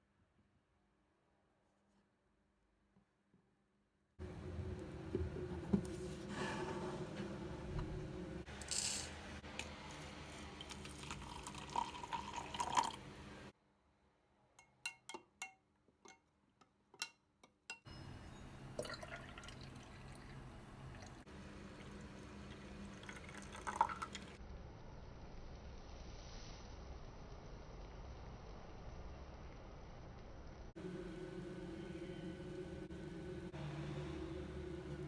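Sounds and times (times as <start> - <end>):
liquid dripping and pouring: 10.4 - 13.0, 18.8 - 20.4, 21.0 - 24.4.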